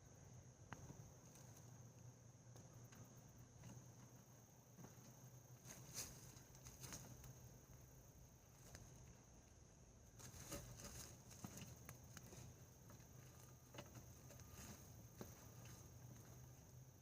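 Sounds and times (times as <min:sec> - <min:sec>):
soil clicks and rustles: 0:04.9 - 0:09.5, 0:10.1 - 0:16.8.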